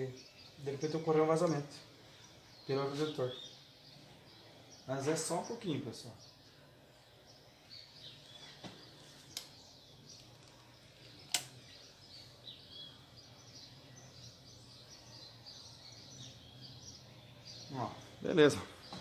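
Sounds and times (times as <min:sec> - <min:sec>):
birds chirping: 0:00.0 - 0:19.0
sharp clicks: 0:09.3 - 0:11.6.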